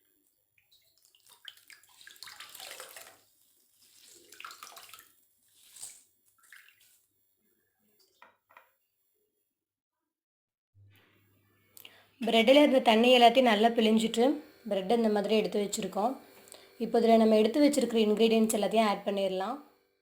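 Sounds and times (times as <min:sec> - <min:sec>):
water splashing and trickling: 0:00.6 - 0:07.1.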